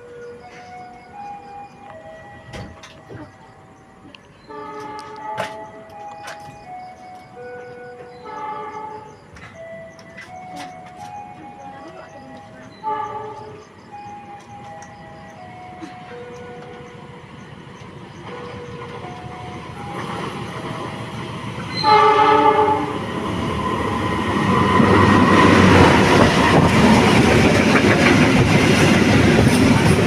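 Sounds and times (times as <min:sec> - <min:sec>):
train engine rumble: 0:00.0 - 0:30.0
wheels clattering on rails: 0:00.0 - 0:30.0
train horn blast: 0:04.5 - 0:05.5, 0:08.1 - 0:09.1, 0:12.8 - 0:13.6, 0:21.7 - 0:23.0.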